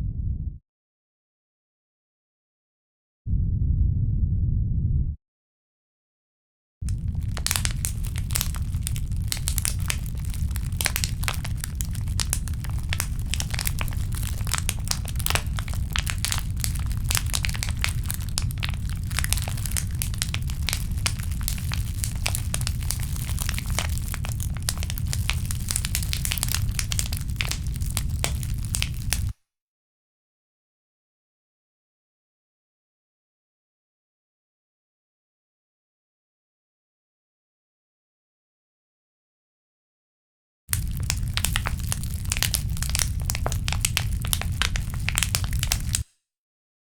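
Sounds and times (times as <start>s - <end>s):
steady low rumble: 0.0s - 0.6s, 3.3s - 5.2s, 6.9s - 29.3s
plastic bottle crackling: 6.8s - 29.3s, 40.7s - 46.1s.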